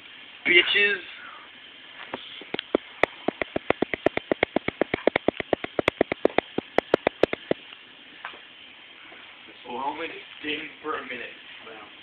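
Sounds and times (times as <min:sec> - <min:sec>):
rapid sharp clicks: 0:02.5 - 0:07.6.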